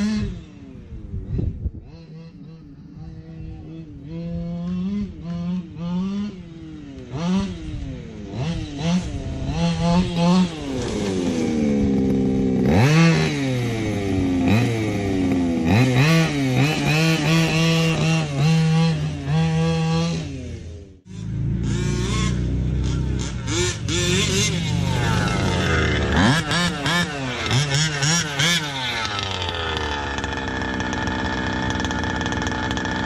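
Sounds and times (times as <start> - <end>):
small two-stroke engine revving: 0.0 - 33.0.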